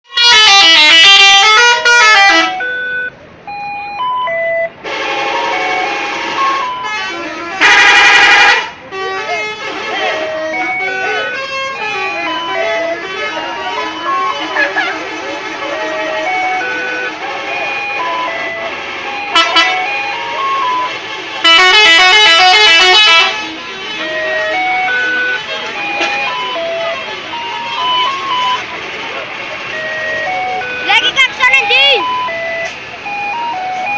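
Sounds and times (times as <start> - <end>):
musical air horns playing a tune: 0.1 - 2.7, 4.8 - 20.2, 20.9 - 26.7.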